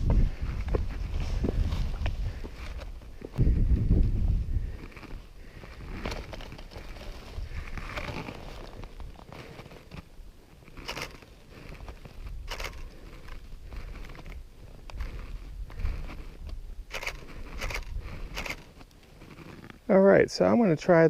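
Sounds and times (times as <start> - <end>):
wind rumble on microphone: 0.0 - 9.2, 11.7 - 18.7
footsteps crunching on snow: 0.0 - 19.9
rustling handling noise: 4.6 - 19.9.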